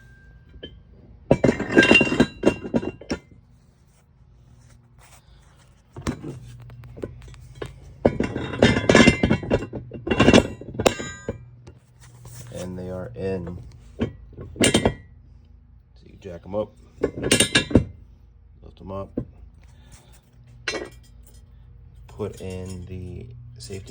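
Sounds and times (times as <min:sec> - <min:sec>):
metal ringing: 0:00.0 - 0:03.3, 0:07.5 - 0:11.6, 0:22.1 - 0:23.9
metal clanks and clinks: 0:00.0 - 0:03.4, 0:05.9 - 0:15.1, 0:16.9 - 0:18.0, 0:20.5 - 0:23.9.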